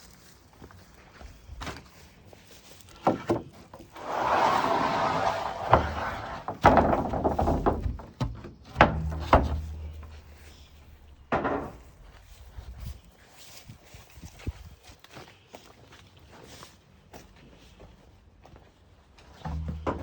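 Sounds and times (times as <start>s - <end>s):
log scraping: 2.9s - 12.1s, 19.4s - 20.0s
heavy wooden thuds: 4.0s - 12.1s, 19.4s - 20.0s.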